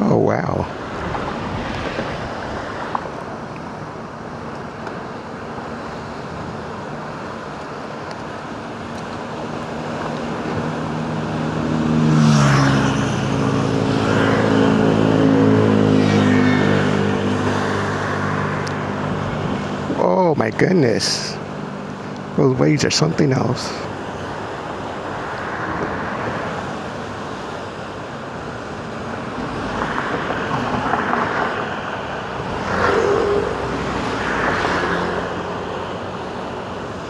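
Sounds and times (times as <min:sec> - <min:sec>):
wind noise: 0:00.0 - 0:03.3
surf washing: 0:00.0 - 0:37.0.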